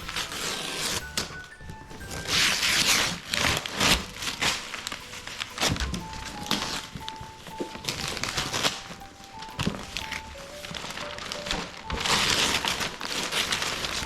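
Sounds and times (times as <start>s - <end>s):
simple background tune: 0.0s - 14.0s
wrapping paper tearing and crinkling: 2.1s - 7.1s, 9.7s - 14.0s.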